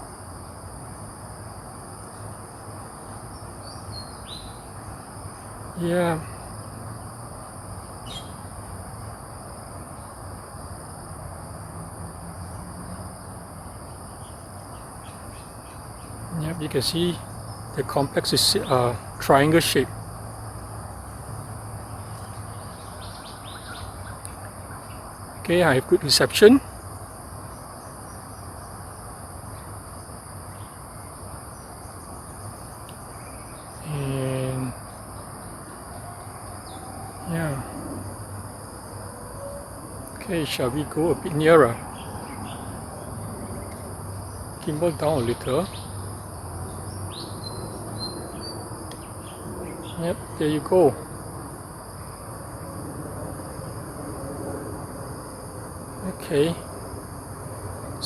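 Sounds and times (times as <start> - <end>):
insects trilling: 0.0 - 58.0
low outdoor hiss: 0.0 - 58.0
man speaking: 5.8 - 6.4, 16.3 - 19.9, 25.4 - 26.6, 33.8 - 34.8, 37.3 - 37.7, 40.2 - 41.8, 44.6 - 45.7, 50.0 - 51.0, 56.0 - 56.6.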